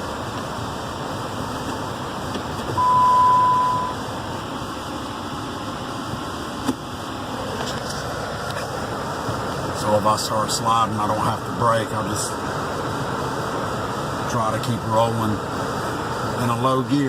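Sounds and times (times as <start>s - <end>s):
truck running noise: 0.0s - 17.0s
electronic beep: 2.8s - 4.0s.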